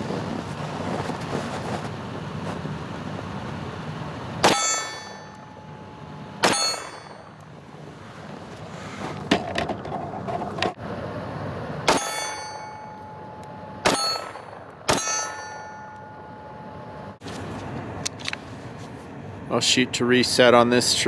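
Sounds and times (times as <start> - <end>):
steel target ringing: 4.4 - 7.4, 11.8 - 17.2.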